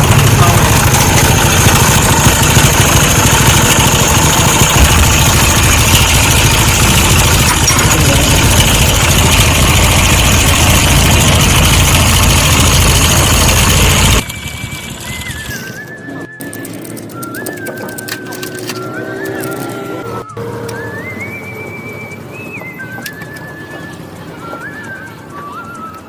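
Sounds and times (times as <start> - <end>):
motorcycle engine idling: 0.0 - 15.8.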